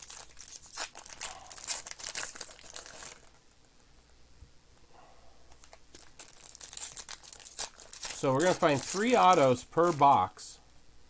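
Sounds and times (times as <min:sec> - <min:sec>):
plastic wrapping crackling: 0:00.0 - 0:03.6, 0:05.5 - 0:10.4.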